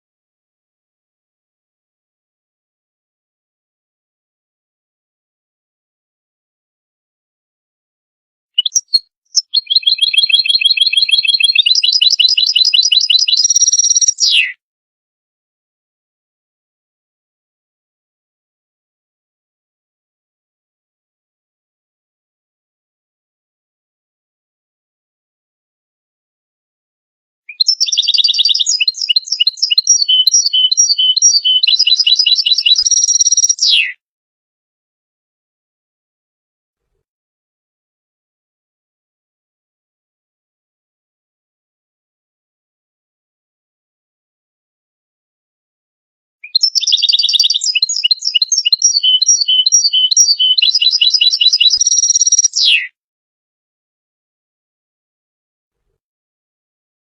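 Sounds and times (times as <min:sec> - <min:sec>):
goldfinch singing: 0:08.6 - 0:14.5, 0:27.5 - 0:33.8, 0:46.4 - 0:52.8.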